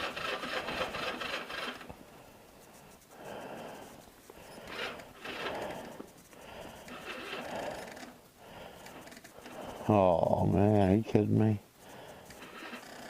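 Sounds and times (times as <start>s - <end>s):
electric starter grinding: 0.0s - 2.0s, 3.4s - 9.9s, 11.8s - 13.0s.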